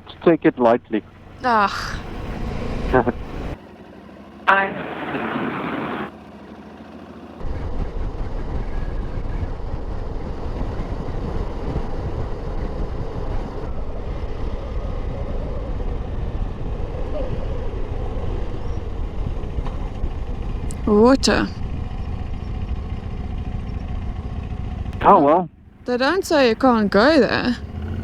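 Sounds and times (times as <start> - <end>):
motorcycle engine: 0.0 - 28.0
wind rush: 7.4 - 22.8.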